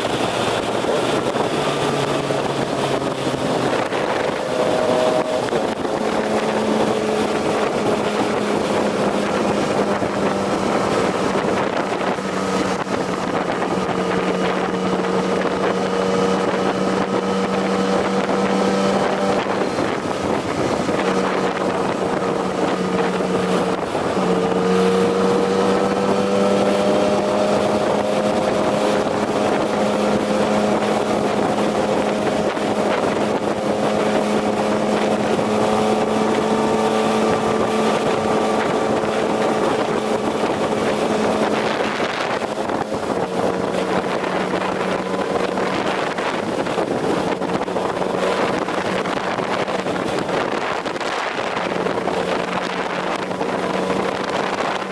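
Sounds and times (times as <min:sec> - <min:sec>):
motorcycle engine cruising: 0:00.0 - 0:54.9
wind rushing over microphone: 0:00.0 - 0:54.9.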